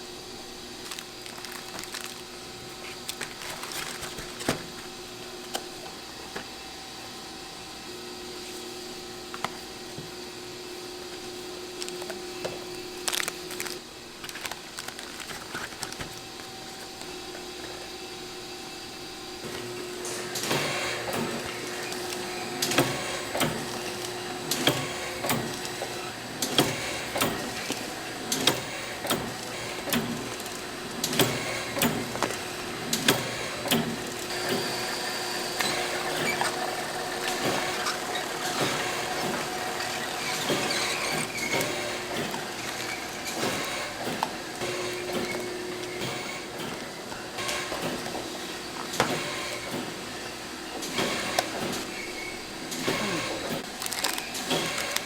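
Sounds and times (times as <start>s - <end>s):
machinery humming: 16.2s - 55.0s
machinery clicks and clatter: 19.4s - 34.9s, 35.6s - 50.0s, 50.8s - 52.0s, 52.7s - 55.0s.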